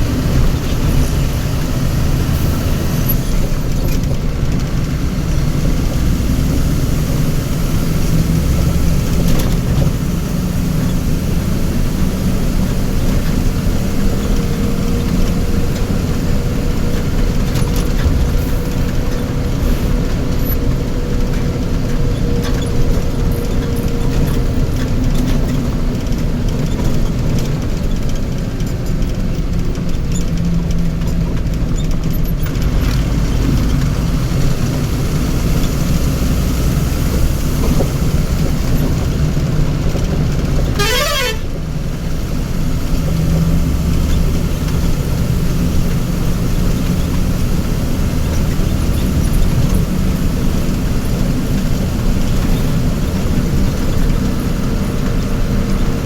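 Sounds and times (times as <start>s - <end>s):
vehicle engine rumbling: 0.0s - 56.0s
warbling horn blast: 40.7s - 41.6s.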